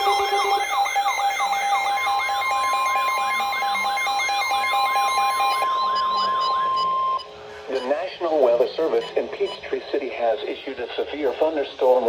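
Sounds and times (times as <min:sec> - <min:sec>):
siren-like sweeping tone: 0:00.0 - 0:02.3
steady high alarm tone: 0:00.0 - 0:09.2
rapid pulsing beeps: 0:00.0 - 0:10.0.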